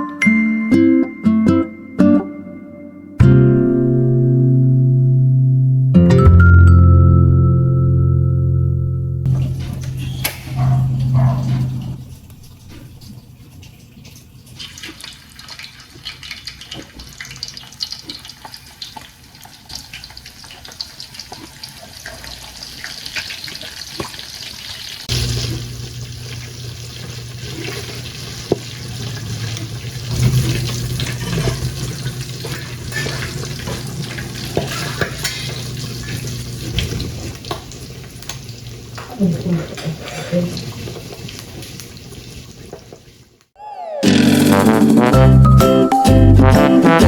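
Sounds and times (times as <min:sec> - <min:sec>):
tap water running into sink: 0:25.1 - 0:42.0.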